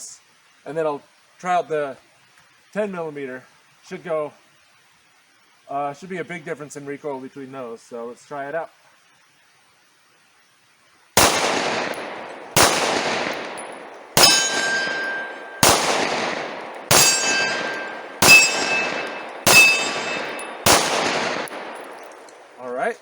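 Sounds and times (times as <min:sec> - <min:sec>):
pistol shots echoing: 0:11.2 - 0:22.6
metallic ring: 0:13.5 - 0:15.8, 0:16.5 - 0:22.4.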